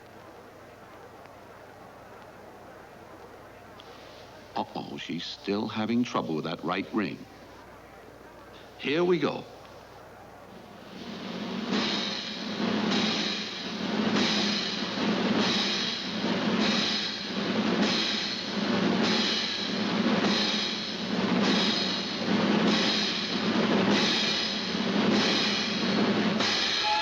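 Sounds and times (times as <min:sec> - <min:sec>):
cymbal: 0:10.8 - 0:27.0
snare drum roll: 0:10.8 - 0:27.0.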